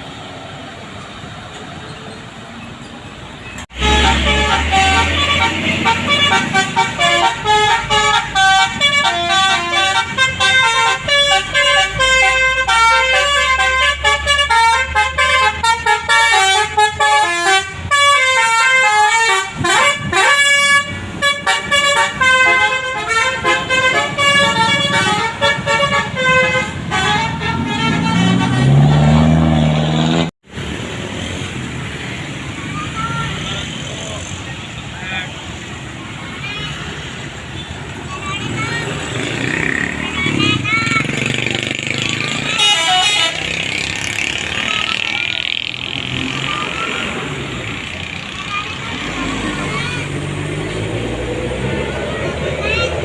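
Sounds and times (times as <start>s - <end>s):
musical air horn tune: 3.7s - 29.4s.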